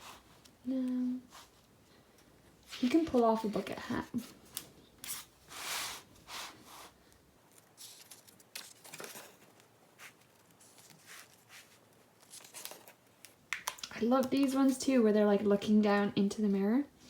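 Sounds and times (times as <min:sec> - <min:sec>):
paper pages rustling: 0:02.6 - 0:14.8.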